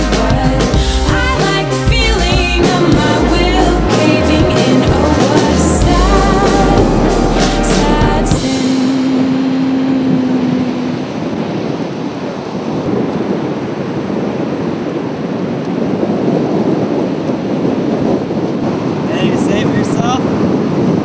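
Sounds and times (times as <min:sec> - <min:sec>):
steady low tone: 0:00.0 - 0:11.4
ocean surf breaking: 0:00.0 - 0:21.0
wind buffeting microphone: 0:00.0 - 0:21.0.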